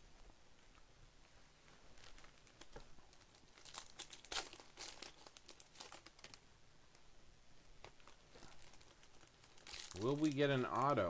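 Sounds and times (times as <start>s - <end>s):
wrapper crinkling and tearing: 1.9s - 6.4s, 7.8s - 11.0s.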